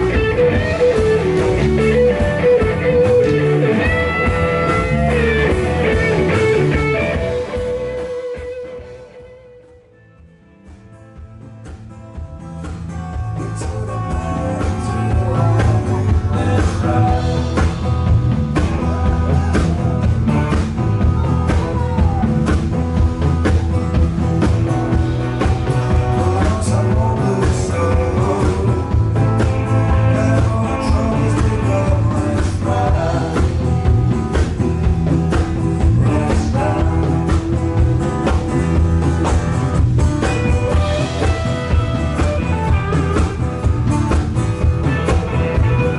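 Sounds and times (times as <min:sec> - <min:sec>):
blues-rock band playing: 0:00.0 - 0:45.9
person singing: 0:13.1 - 0:22.6, 0:25.2 - 0:38.8.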